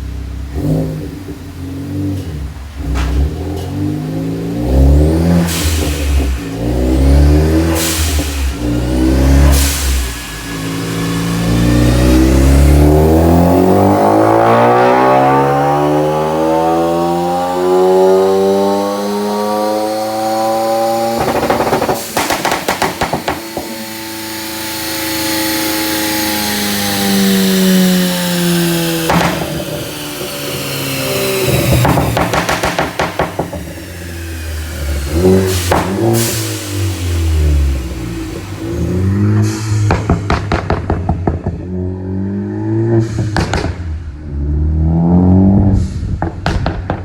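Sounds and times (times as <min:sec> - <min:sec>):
car engine revving: 0:00.0 - 0:47.0
exhaust crackles and pops: 0:21.1 - 0:24.0, 0:28.7 - 0:36.7, 0:39.3 - 0:41.8, 0:43.2 - 0:44.0, 0:45.5 - 0:47.0.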